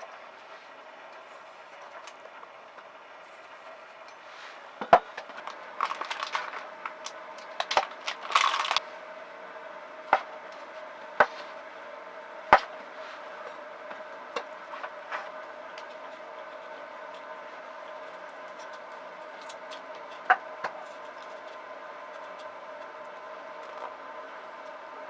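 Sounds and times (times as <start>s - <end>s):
faint steady hum: 0.0s - 25.0s
objects knocking and clattering: 4.8s - 6.7s, 7.4s - 8.8s
rustling: 5.3s - 7.0s, 7.8s - 8.8s.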